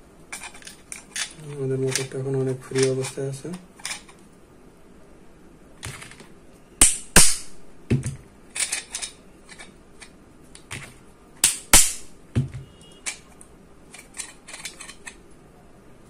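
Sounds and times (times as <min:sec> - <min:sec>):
metal parts clicking and knocking: 0:00.3 - 0:04.2, 0:07.9 - 0:11.6, 0:12.4 - 0:15.2.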